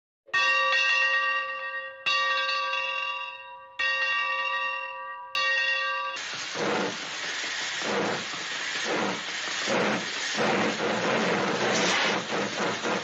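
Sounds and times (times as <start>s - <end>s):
broad rushing noise: 6.2s - 13.0s.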